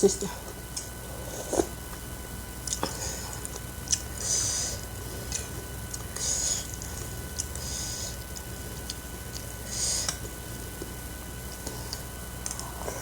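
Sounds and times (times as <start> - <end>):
person chewing: 2.6 - 13.0.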